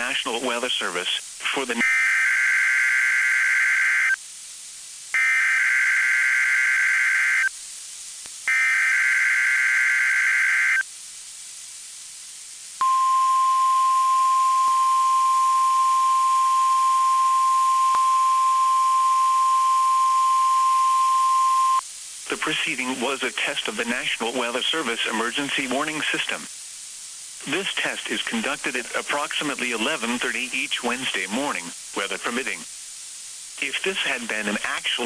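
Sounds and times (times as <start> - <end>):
hiss: 4.1 - 6.2, 7.4 - 8.6, 10.7 - 12.8, 21.8 - 35.0
steady warning alarm tone: 12.8 - 21.8.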